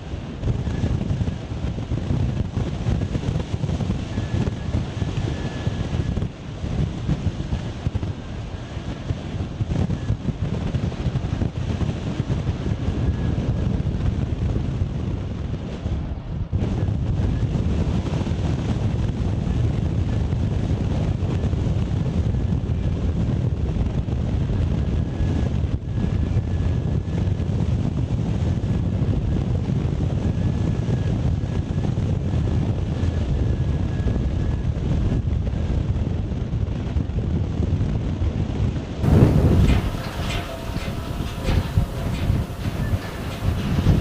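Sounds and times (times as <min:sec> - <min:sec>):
wind buffeting microphone: 0:00.0 - 0:44.0
faint thin high tone: 0:39.0 - 0:44.0.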